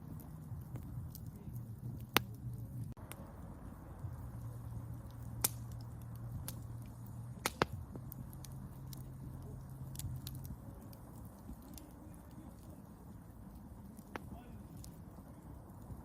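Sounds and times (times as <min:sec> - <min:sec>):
campfire rumble: 0:00.0 - 0:16.0
fire crackling pops: 0:00.0 - 0:16.0.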